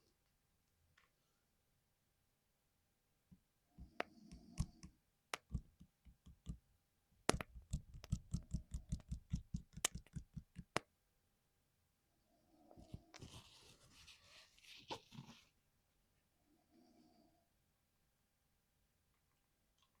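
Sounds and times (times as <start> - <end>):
mechanical keyboard typing: 7.3 - 10.8.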